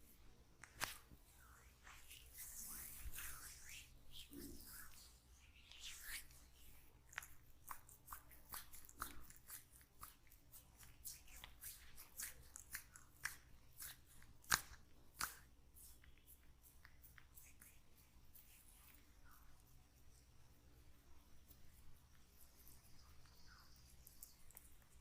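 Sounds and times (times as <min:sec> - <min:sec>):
hands crackling through oiled hair: 0:00.6 - 0:19.1
sharp snaps: 0:07.0 - 0:17.8.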